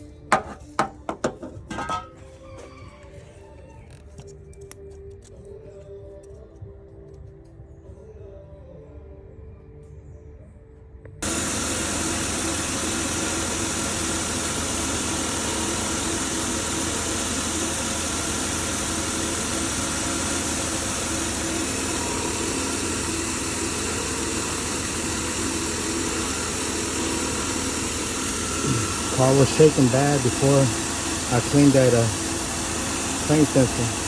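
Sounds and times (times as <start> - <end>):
car engine idling: 11.2 - 34.0.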